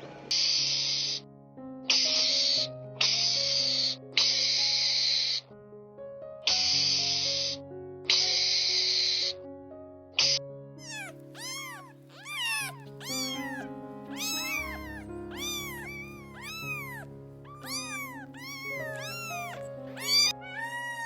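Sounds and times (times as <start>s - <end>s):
background music: 0.0s - 2.6s, 10.9s - 21.0s
cat meowing: 10.8s - 21.0s.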